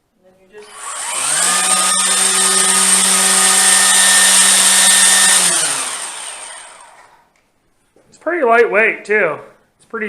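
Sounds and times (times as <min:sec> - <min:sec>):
weedeater motor whining: 0:00.6 - 0:07.2.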